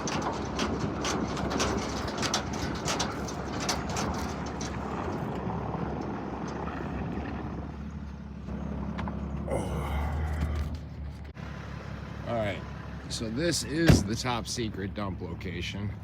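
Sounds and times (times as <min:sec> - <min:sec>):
sharp knocks and rattles: 0:00.0 - 0:07.6
truck engine running: 0:00.0 - 0:16.0.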